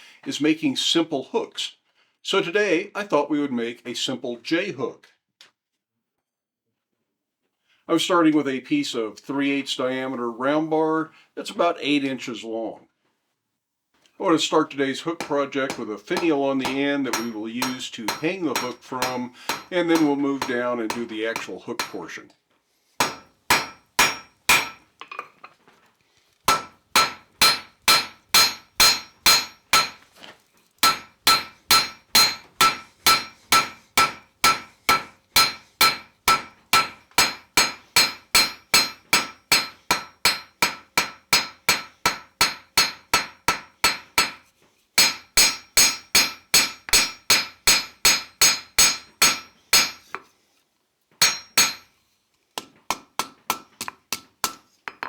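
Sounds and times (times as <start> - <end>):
hammer striking steel on anvil: 15.2 - 22.1, 23.0 - 24.9, 26.5 - 30.0, 30.8 - 50.3, 51.2 - 51.9, 52.6 - 55.0.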